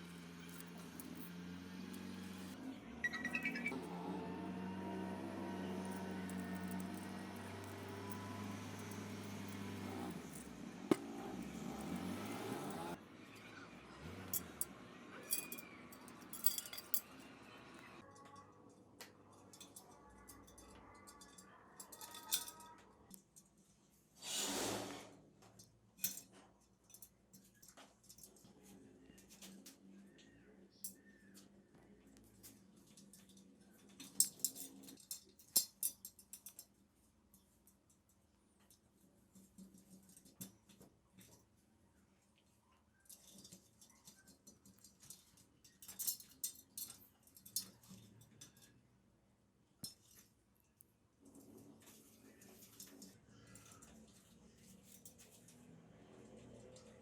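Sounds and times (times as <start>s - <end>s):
metallic clicks and scrapes: 0.0s - 3.8s, 5.6s - 13.5s, 14.2s - 18.4s
metal parts clinking: 0.1s - 1.3s, 5.7s - 13.0s, 14.2s - 17.4s, 19.3s - 22.7s, 32.4s - 36.7s, 43.1s - 48.7s
short hiss: 24.2s - 25.2s.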